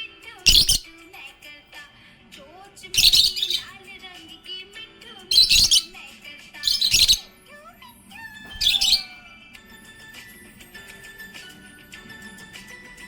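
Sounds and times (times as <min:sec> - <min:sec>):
budgerigar harsh chirps: 0:00.5 - 0:00.9, 0:03.0 - 0:03.7, 0:05.3 - 0:06.0, 0:06.6 - 0:07.3, 0:08.6 - 0:09.1
budgerigar whistled glides: 0:00.5 - 0:00.9, 0:03.0 - 0:03.7, 0:05.3 - 0:06.0, 0:06.6 - 0:07.2, 0:08.5 - 0:09.2.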